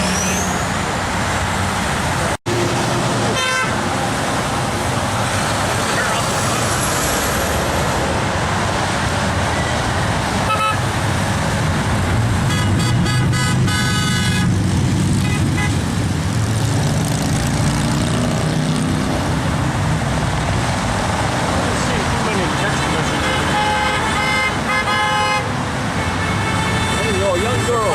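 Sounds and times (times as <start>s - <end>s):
highway traffic passing: 0.0s - 27.9s
car horns honking: 3.2s - 3.9s, 10.4s - 10.9s, 12.4s - 14.6s, 15.2s - 15.9s, 22.7s - 27.9s.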